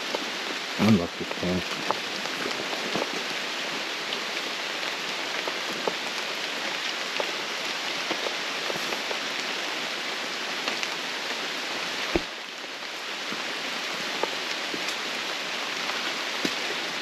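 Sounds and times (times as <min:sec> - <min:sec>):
rain on foliage: 0:00.0 - 0:17.0.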